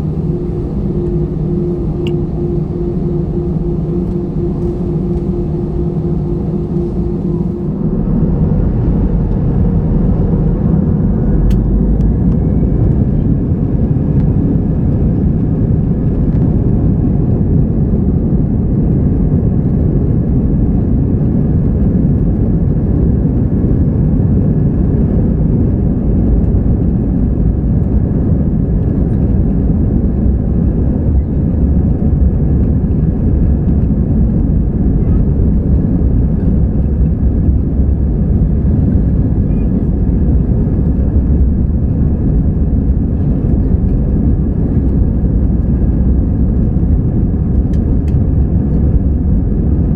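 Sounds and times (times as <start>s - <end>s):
jet engines roaring at takeoff: 0.0s - 14.3s
faint high engine whine: 0.0s - 17.6s, 23.3s - 49.9s.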